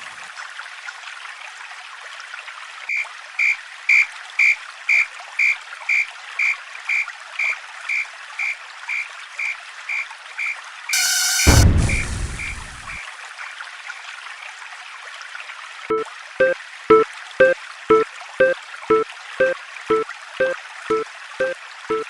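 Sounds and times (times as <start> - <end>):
level-crossing alarm ringing: 11.0 - 11.7, 15.9 - 22.0
loud sustained tone: 11.0 - 13.0.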